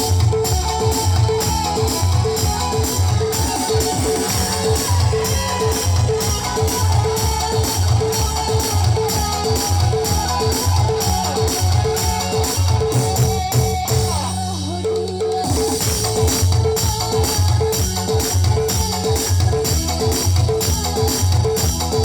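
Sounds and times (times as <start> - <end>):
band music: 0.0 - 22.0
drum kit: 0.0 - 22.0.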